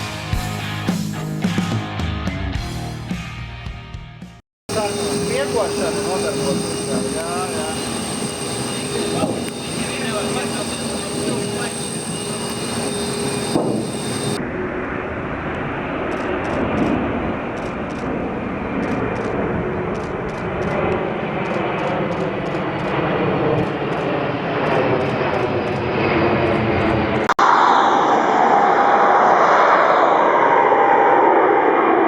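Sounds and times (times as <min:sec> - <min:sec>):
jet engines running: 0:04.7 - 0:32.0.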